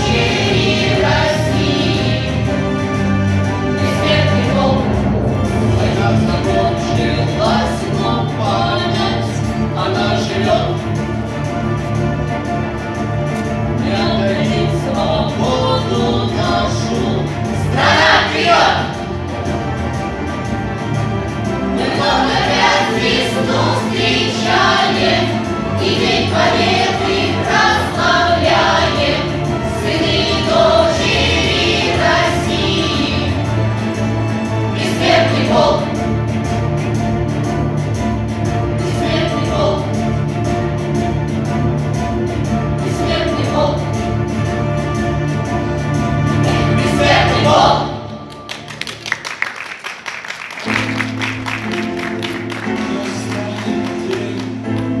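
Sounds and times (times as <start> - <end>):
choir singing with accompaniment: 0.0 - 49.4
people clapping: 48.1 - 55.0.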